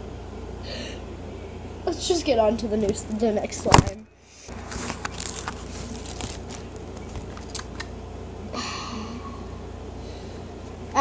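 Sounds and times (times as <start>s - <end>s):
low steady hum: 0.0s - 11.0s
short rustle: 4.5s - 7.6s.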